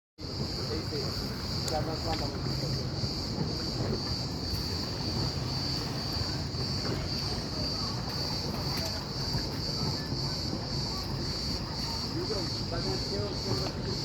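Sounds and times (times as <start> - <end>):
cicadas buzzing: 0.2 - 14.0.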